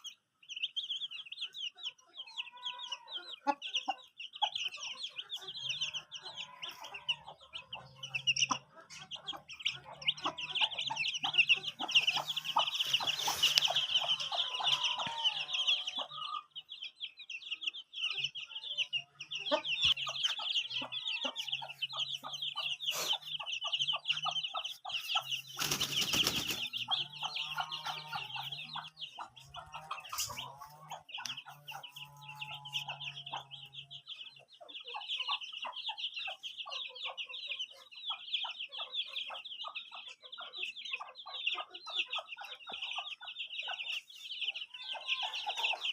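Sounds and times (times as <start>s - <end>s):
chickens clucking: 0.0s - 45.9s
wings flapping: 25.5s - 26.7s.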